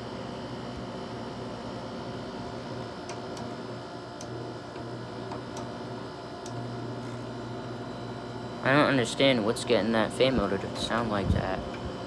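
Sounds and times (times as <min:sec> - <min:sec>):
air conditioner humming: 0:00.0 - 0:12.0.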